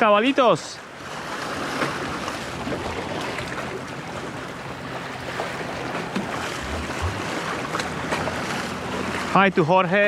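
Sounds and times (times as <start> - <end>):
waves washing against shore: 0.0 - 10.0
wind buffeting microphone: 1.6 - 9.3.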